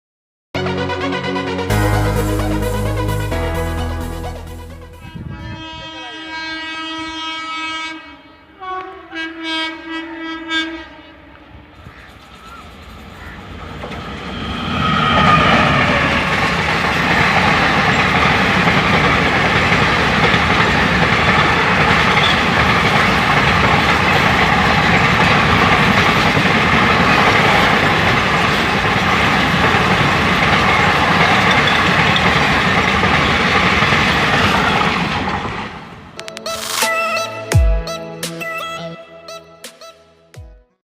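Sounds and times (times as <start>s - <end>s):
train horn: 1.7s - 12.1s
train wheels on rails: 11.7s - 36.2s.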